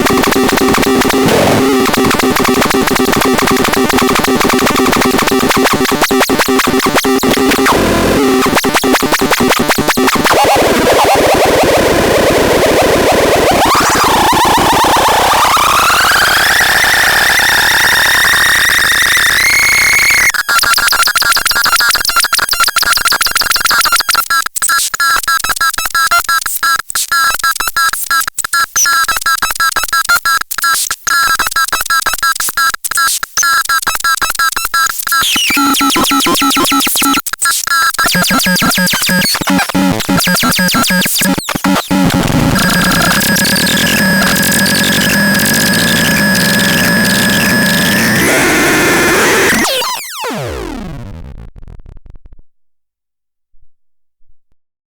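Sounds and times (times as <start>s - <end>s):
synthesizer buzzing tones: 0.0s - 11.3s, 35.2s - 37.2s, 38.0s - 52.1s.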